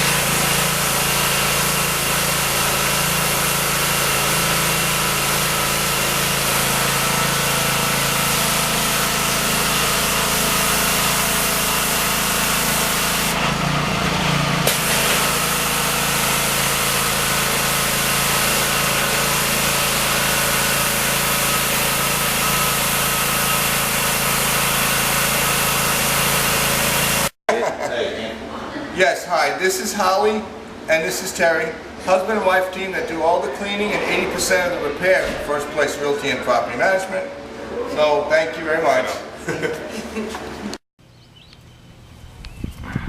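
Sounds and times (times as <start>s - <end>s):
water spray hissing: 0.0s - 13.4s, 14.6s - 27.3s
pressure washer engine hum: 0.0s - 27.4s.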